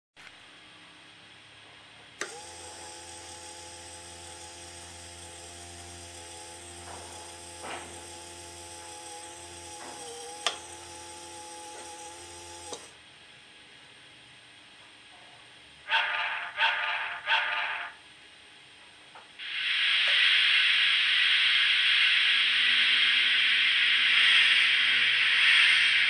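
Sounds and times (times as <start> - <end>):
electric motor whirring hum: 2.2 - 13.0.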